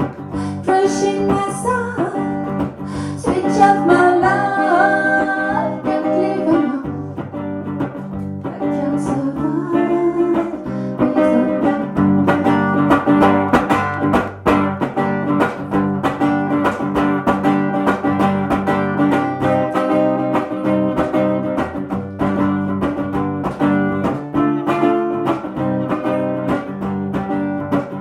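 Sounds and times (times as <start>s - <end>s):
strummed guitar chords: 0.0s - 28.0s
rock band playing: 10.0s - 28.0s.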